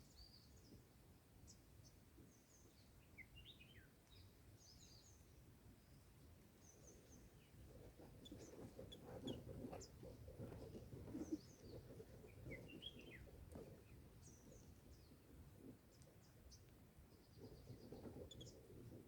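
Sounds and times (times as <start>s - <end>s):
small birds chirping and trilling: 6.6s - 15.2s, 15.9s - 18.8s.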